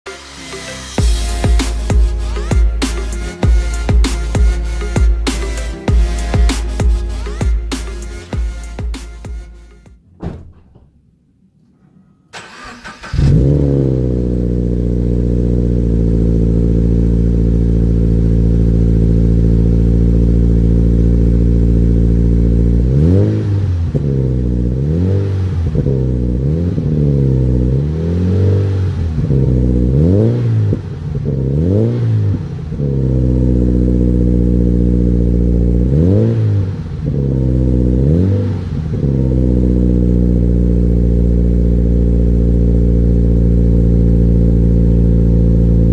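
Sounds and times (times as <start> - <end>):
car engine idling: 12.4 - 31.5, 32.3 - 45.9
engine revving throttle blips: 12.4 - 45.9.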